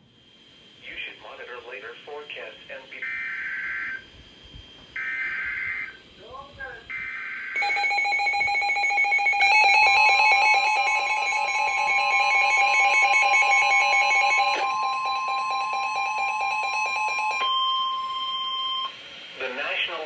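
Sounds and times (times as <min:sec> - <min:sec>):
steady warning alarm tone: 0:00.4 - 0:20.0
fast pulsing alarm: 0:03.0 - 0:19.0
higher steady tone: 0:07.6 - 0:18.9.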